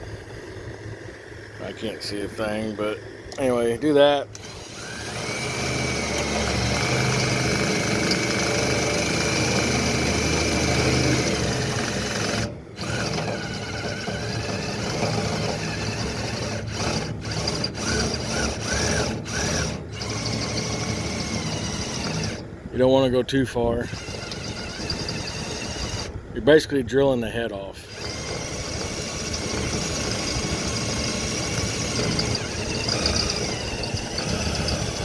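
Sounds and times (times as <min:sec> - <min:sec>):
power drill whining: 0:04.2 - 0:22.5, 0:23.8 - 0:26.2, 0:27.9 - 0:35.0.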